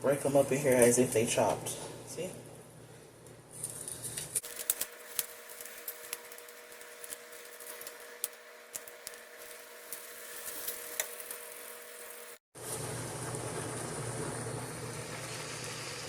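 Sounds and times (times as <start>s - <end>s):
meat sizzling in a frying pan: 4.4s - 16.0s.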